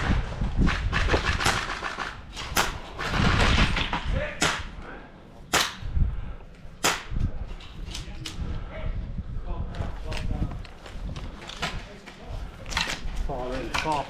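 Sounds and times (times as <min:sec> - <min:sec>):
rustling noise: 0:00.0 - 0:04.2
airsoft gun shots: 0:05.5 - 0:05.9, 0:06.8 - 0:07.2.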